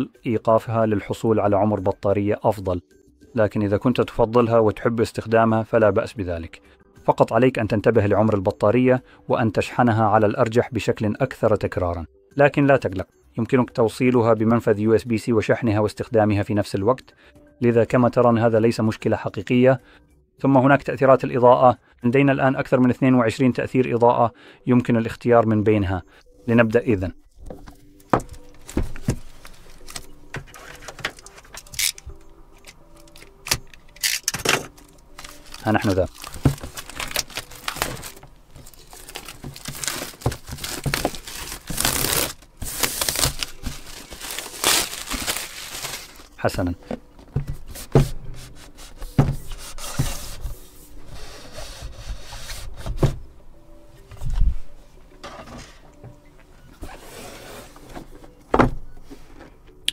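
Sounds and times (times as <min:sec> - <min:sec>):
cardboard rubbing and sliding: 0:47.7 - 0:53.1, 0:56.8 - 0:58.0.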